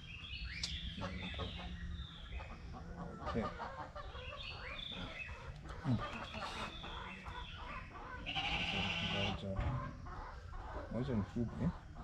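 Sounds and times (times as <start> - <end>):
sheep bleating: 8.3 - 9.4.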